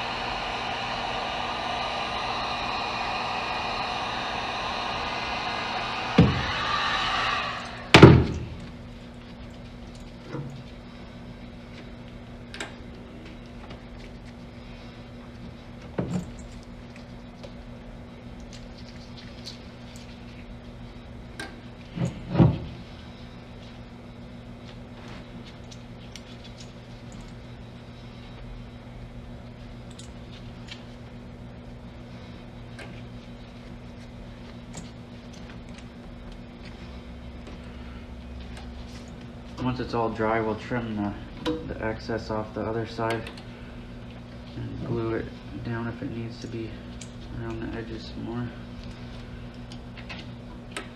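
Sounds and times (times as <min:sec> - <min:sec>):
steady hiss: 0:00.0 - 0:08.8
low hum: 0:00.0 - 0:15.6
loud thump: 0:06.0 - 0:08.6.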